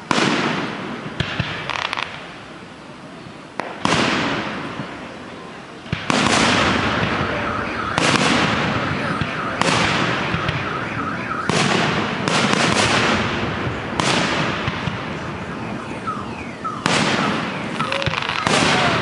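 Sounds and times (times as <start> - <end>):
fireworks crackle: 0.0 - 2.8, 3.4 - 19.0
fireworks shells bursting: 16.8 - 19.0.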